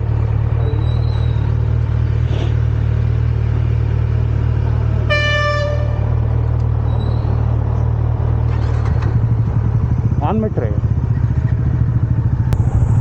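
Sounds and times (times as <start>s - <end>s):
motorcycle engine running: 1.4s - 13.0s
vehicle horn honking: 5.1s - 6.1s.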